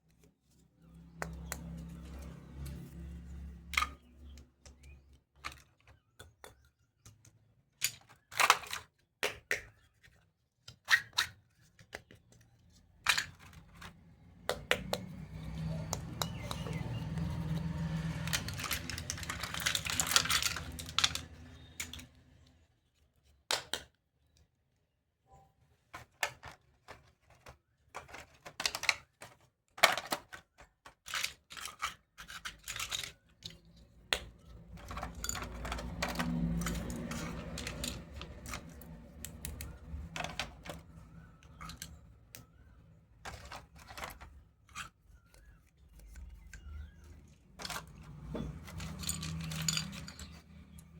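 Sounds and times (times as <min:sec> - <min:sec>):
plastic toy pieces clicking: 0:03.7 - 0:09.7, 0:13.0 - 0:22.2, 0:26.2 - 0:42.6, 0:43.2 - 0:44.9, 0:46.1 - 0:50.9
rustling: 0:15.8 - 0:21.6.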